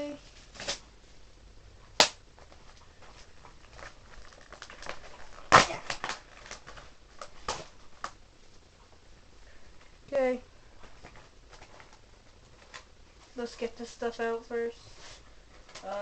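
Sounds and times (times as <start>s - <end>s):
sharp snaps: 2.0s - 2.2s
packaging crinkling: 2.0s - 8.2s.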